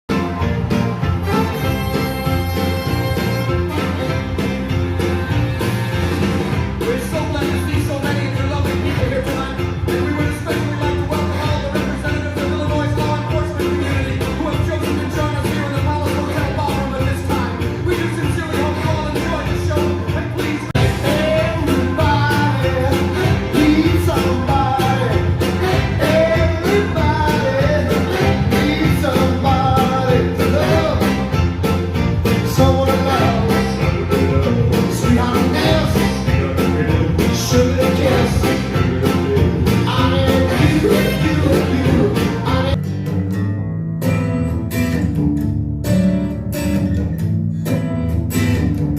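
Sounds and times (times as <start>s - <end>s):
song with singing over speakers: 0.1s - 42.9s.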